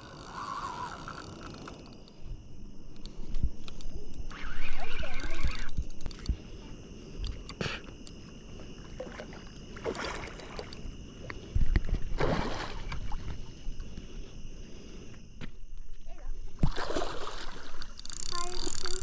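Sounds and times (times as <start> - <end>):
insects chirring: 0.0 - 19.0
fish splashing water: 16.6 - 18.0.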